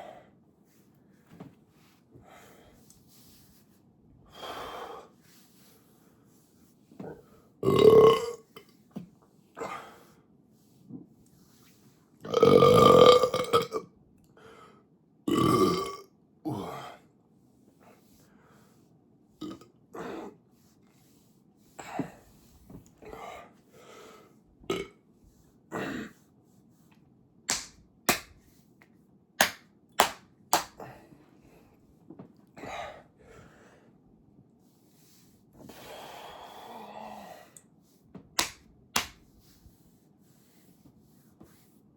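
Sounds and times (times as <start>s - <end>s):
man belching: 7.6s - 8.4s, 12.3s - 13.8s, 15.3s - 16.7s
sharp slaps: 27.5s - 28.4s, 29.4s - 30.8s, 38.4s - 39.2s.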